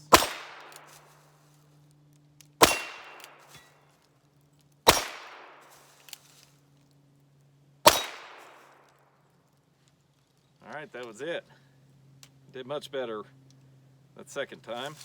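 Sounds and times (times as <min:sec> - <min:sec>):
revolver shots: 0:00.1 - 0:01.0, 0:02.6 - 0:03.6, 0:04.9 - 0:05.6, 0:07.9 - 0:08.6.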